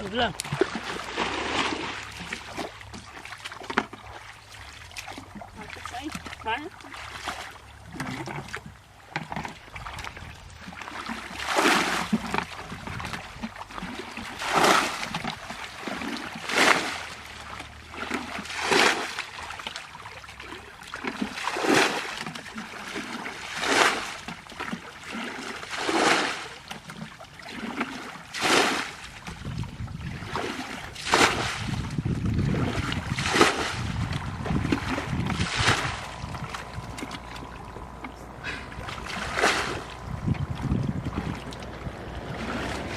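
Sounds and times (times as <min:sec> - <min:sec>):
water splashing: 0:00.0 - 0:42.9
low rumble: 0:31.6 - 0:42.9.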